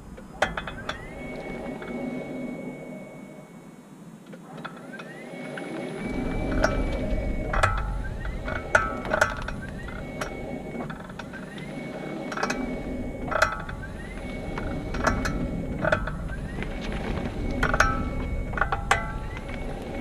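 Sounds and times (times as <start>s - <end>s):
mechanical clicks and clunks: 0.0s - 3.4s, 4.2s - 20.0s
electric motor whine: 0.0s - 20.0s
low rumble: 5.7s - 20.0s.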